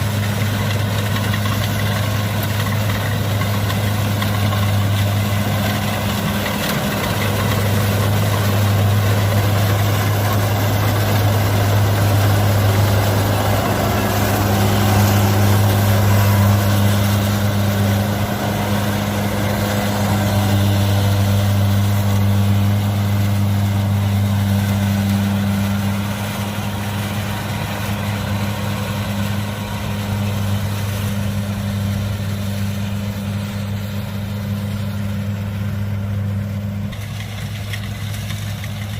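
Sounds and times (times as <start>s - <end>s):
combine harvester diesel drone: 0.0s - 38.9s
machinery noise: 0.0s - 38.9s.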